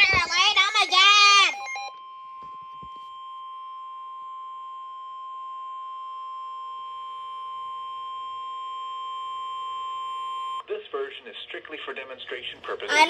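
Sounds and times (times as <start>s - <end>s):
high-pitched alarm beep: 0.0s - 3.1s.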